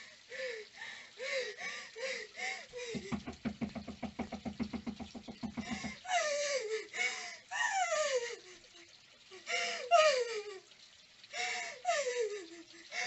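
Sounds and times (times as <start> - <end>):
rapid knocking on a door: 2.9 - 6.0.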